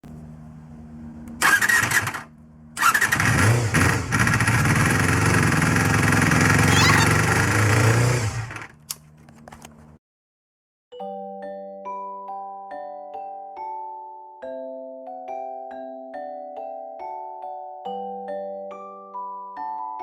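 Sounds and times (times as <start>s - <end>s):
motorcycle engine starting and revving: 0.2s - 8.9s.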